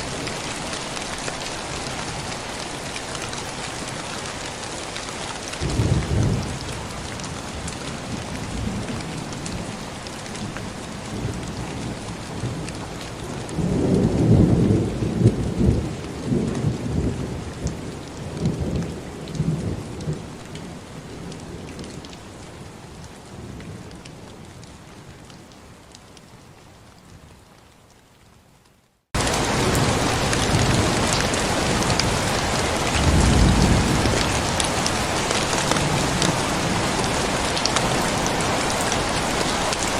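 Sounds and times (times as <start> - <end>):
heavy rain: 0.0 - 39.9
thunder rumbling: 5.6 - 12.8, 29.2 - 39.9.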